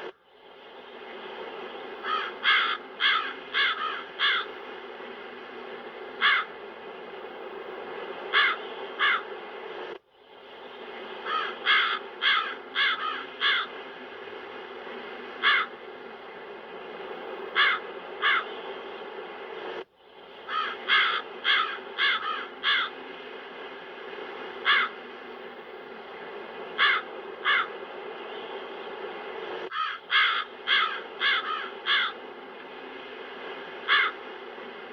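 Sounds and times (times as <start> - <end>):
steady wind: 0.0 - 34.9
crows cawing: 2.0 - 4.6, 6.2 - 6.6, 8.3 - 9.3, 11.2 - 13.8, 15.4 - 15.8, 17.5 - 18.5, 20.5 - 23.0, 24.6 - 25.0, 26.8 - 27.8, 29.7 - 32.2, 33.8 - 34.2.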